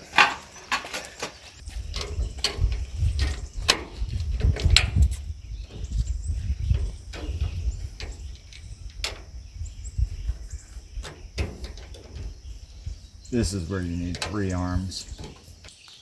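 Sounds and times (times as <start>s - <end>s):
metal frame parts clicking and knocking: 0.0s - 15.8s.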